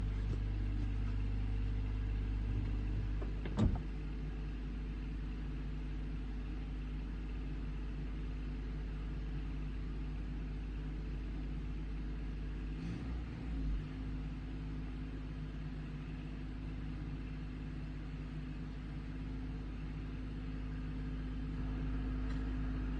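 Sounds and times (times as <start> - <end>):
backhoe engine running: 0.0 - 22.9
low thump: 2.6 - 3.9.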